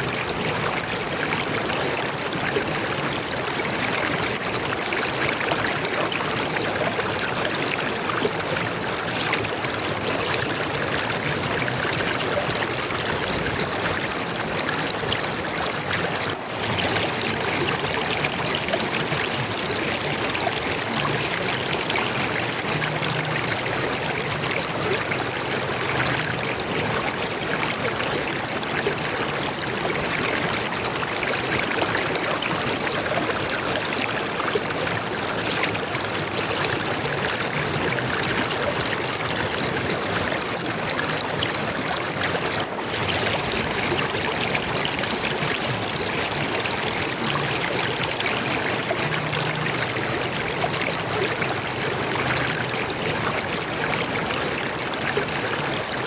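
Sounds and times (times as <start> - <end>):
water flowing: 0.0 - 56.0.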